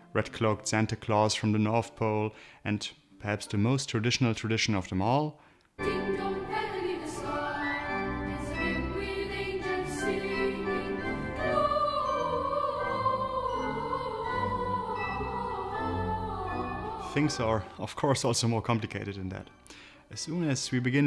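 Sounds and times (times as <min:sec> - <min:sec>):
choir singing sustained chords: 0:05.8 - 0:20.4.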